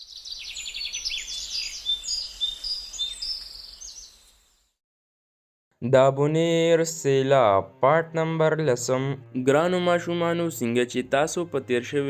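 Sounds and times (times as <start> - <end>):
birds chirping and trilling: 0.0 - 4.7.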